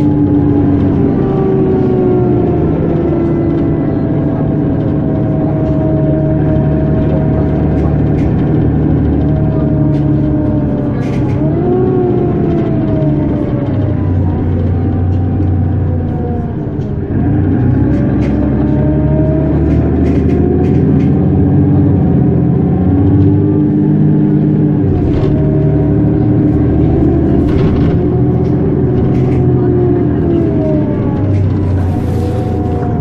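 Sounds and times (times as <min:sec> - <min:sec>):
bus diesel engine pulling hard: 0:00.0 - 0:33.0
light clicks and rattles: 0:19.5 - 0:21.2, 0:27.0 - 0:33.0.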